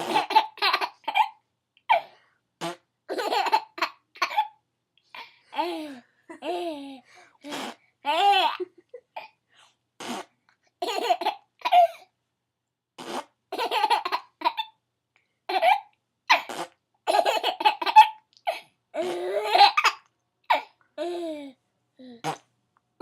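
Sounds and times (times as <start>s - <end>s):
baby laughing: 0.0s - 2.1s, 3.1s - 4.6s, 8.0s - 9.3s, 10.8s - 12.0s, 13.5s - 14.8s, 17.1s - 20.7s
woman making spitting noises: 7.4s - 7.8s, 10.0s - 10.3s, 13.0s - 13.3s, 16.4s - 16.8s, 22.2s - 22.5s.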